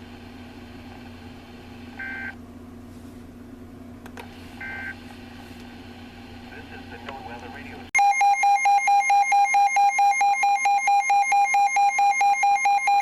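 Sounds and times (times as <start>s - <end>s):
radio hiss and hum: 4.2s - 8.0s.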